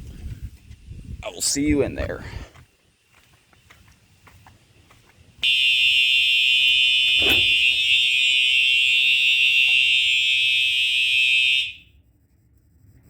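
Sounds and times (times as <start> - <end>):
high-pitched fire alarm tone: 5.4 - 12.0.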